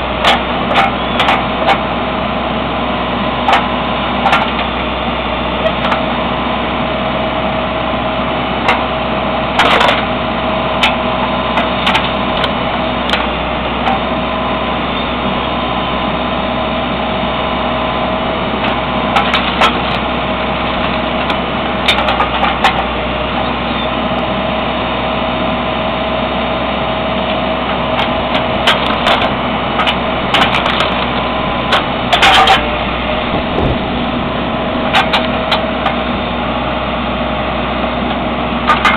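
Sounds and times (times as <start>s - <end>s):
backhoe engine running: 0.0s - 38.9s
wood splitting cracks: 28.0s - 34.0s.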